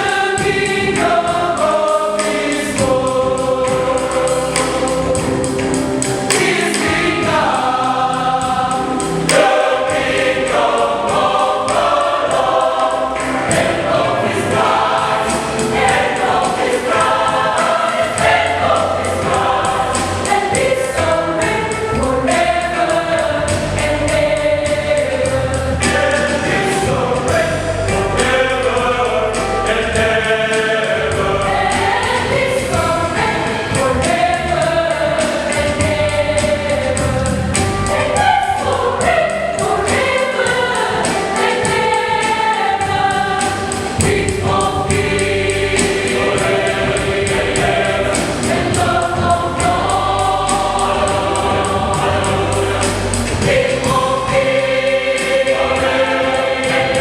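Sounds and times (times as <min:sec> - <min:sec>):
choir singing gospel song: 0:00.0 - 0:57.0.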